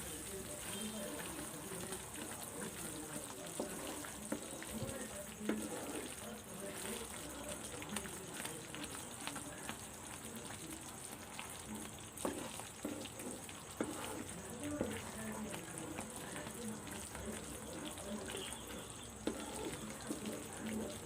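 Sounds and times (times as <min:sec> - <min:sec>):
ladle stirring and scraping pan: 0:00.0 - 0:21.0.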